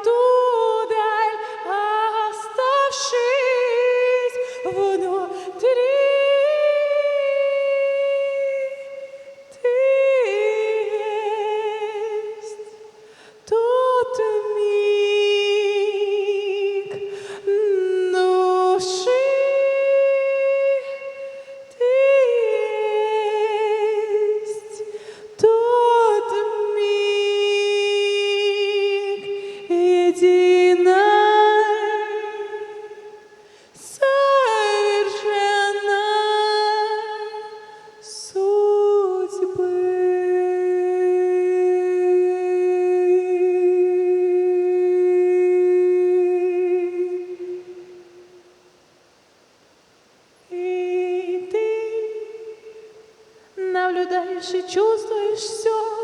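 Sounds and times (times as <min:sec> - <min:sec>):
person singing sustained vowels: 0:00.0 - 0:48.8.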